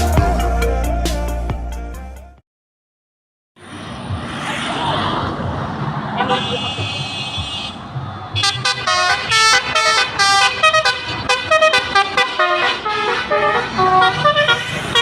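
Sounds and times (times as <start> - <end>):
bus musical horn playing a tune: 6.2 - 7.8, 8.4 - 15.0.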